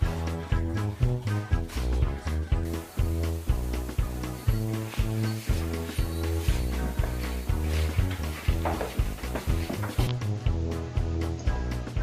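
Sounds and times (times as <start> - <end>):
deep bass line: 0.0 - 12.0
music with steady beat: 0.0 - 12.0.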